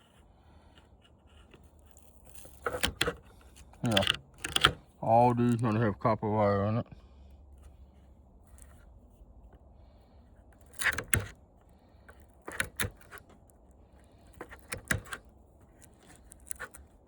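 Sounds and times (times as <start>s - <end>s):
clicks and clinks of hard parts: 2.6s - 4.9s.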